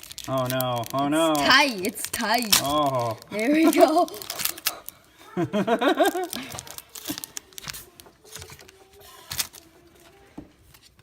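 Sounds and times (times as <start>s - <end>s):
card pack wrapper crinkling: 0.0s - 11.0s
person exclaiming: 1.0s - 4.5s.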